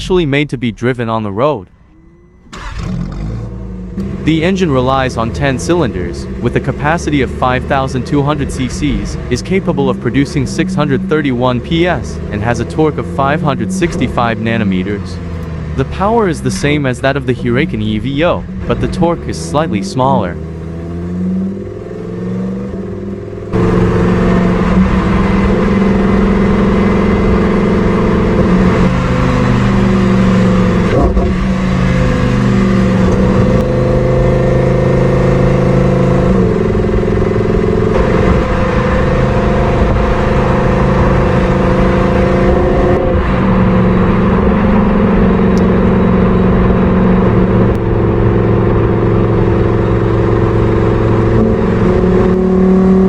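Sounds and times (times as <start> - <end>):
car engine and exhaust running: 0.0 - 53.0.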